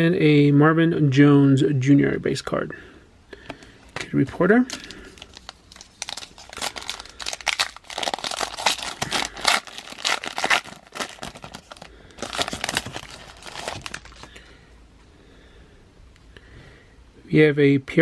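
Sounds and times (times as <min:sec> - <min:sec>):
foil wrapper tearing and crinkling: 0:04.7 - 0:14.5.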